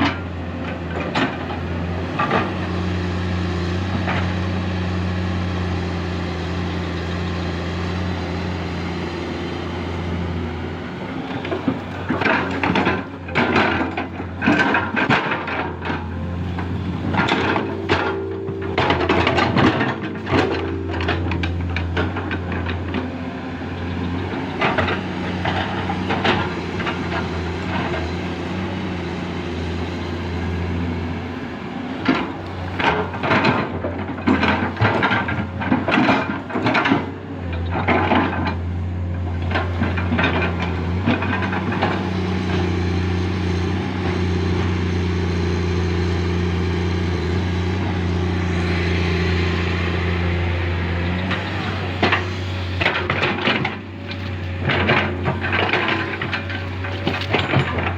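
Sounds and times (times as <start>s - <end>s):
excavator diesel engine running: 0.0s - 57.9s
knocks and clanks: 11.5s - 28.2s, 51.0s - 57.9s.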